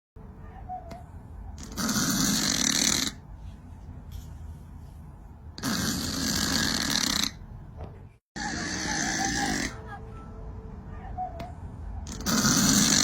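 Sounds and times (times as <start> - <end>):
cat snoring: 1.6 - 3.2, 5.6 - 7.4, 12.1 - 13.0.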